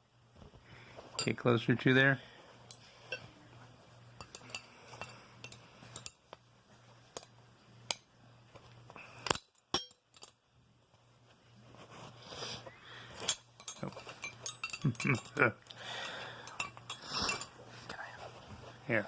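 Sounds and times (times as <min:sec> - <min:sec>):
metal wrenches clinking on padlock: 0:13.3 - 0:15.4.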